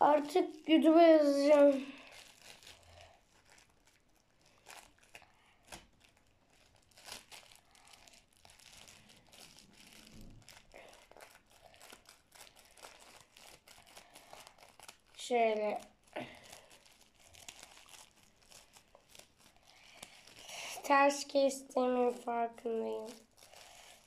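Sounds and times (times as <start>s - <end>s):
plastic bag crinkling: 0.0s - 24.0s.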